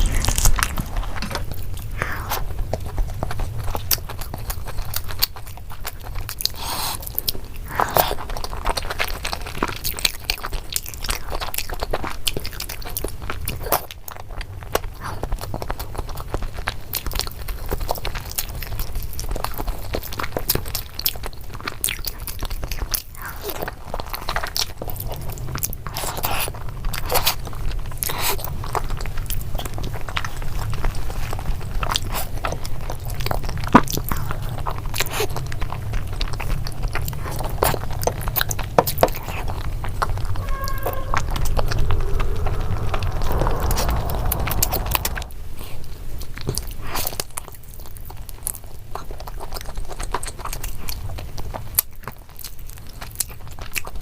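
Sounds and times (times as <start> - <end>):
person chewing crunchy food: 0.0 - 13.8
steady low hum: 38.2 - 45.7.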